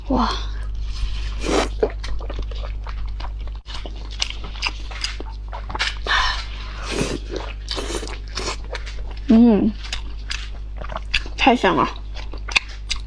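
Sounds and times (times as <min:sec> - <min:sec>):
steady low hum: 0:00.0 - 0:13.0
wet chewing and lip smacks: 0:01.4 - 0:13.0.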